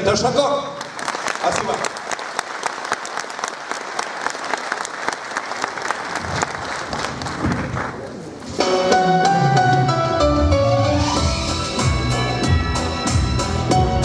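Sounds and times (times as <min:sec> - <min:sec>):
audience applauding: 0:00.8 - 0:08.9.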